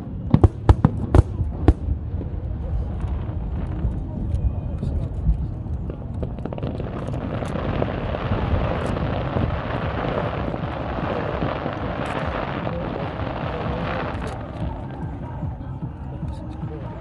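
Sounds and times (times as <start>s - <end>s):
fireworks crackling: 0.0s - 17.0s
low rumble: 0.0s - 17.0s.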